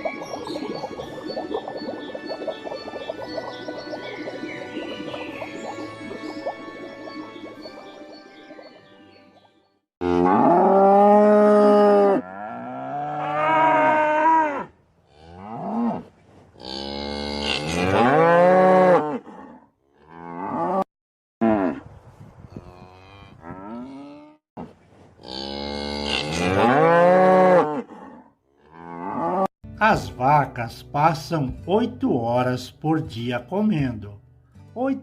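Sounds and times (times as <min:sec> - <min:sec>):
cattle mooing: 0:10.0 - 0:16.0.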